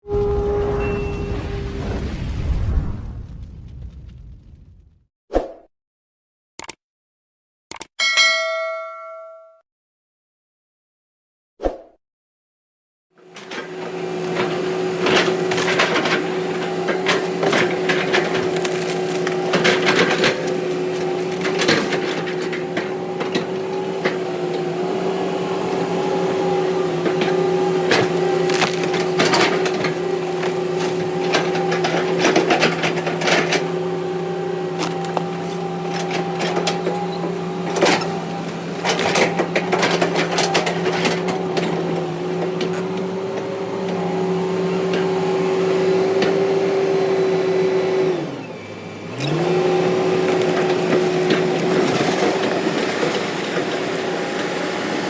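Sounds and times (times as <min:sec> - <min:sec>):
diesel engine running: 0:13.2 - 0:55.0.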